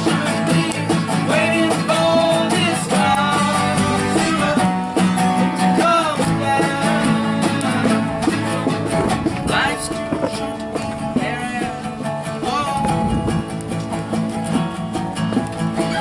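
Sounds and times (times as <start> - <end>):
bass guitar: 0.0 - 16.0
electric guitars: 0.0 - 16.0
drum hits: 5.8 - 13.5.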